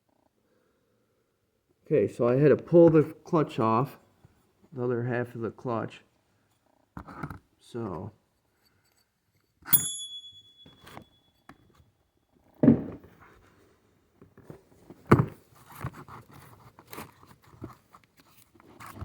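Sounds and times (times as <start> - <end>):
metal clink: 9.7 - 11.5.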